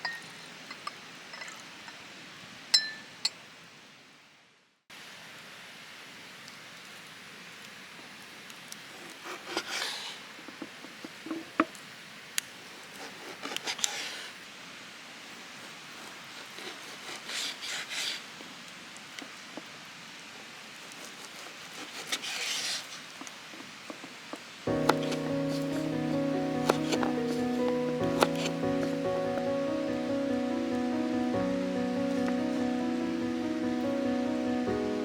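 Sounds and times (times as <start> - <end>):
steady hiss: 0.0 - 35.0
scraping and rubbing: 9.0 - 11.6, 20.9 - 29.6.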